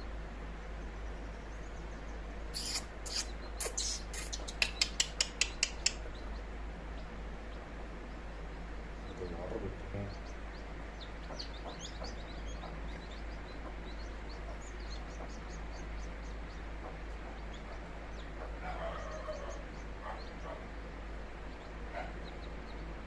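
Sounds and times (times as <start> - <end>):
chicks peeping: 0.4 - 23.0
hen clucking: 2.6 - 20.7.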